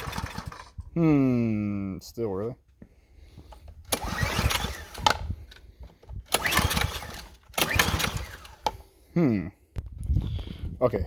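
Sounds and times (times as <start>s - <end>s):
small engine turning over: 0.0s - 0.8s, 3.8s - 8.9s
recoil starter pulls: 0.0s - 0.9s, 3.6s - 8.9s.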